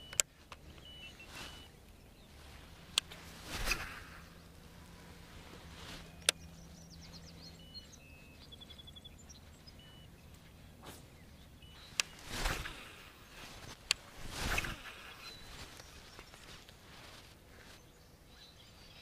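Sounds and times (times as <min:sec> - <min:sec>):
sharp clicks: 0:00.0 - 0:01.0, 0:06.2 - 0:06.5, 0:11.6 - 0:12.9
faint bird chirps: 0:00.0 - 0:19.0
short swish: 0:03.3 - 0:04.4, 0:12.1 - 0:13.0, 0:14.1 - 0:15.2.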